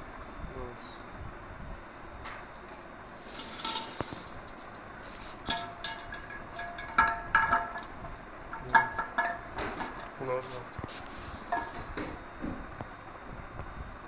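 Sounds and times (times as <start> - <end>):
tool clinking on metal fittings: 5.4 - 7.9.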